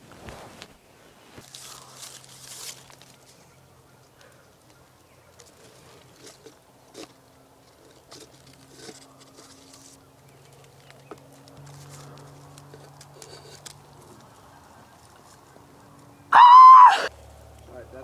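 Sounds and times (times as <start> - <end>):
footsteps in dry leaves: 1.2 - 3.7.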